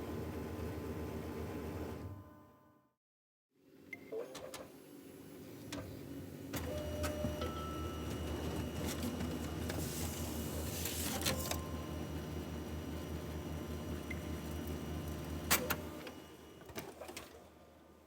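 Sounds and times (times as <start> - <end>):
printer motors humming: 5.6 - 17.2.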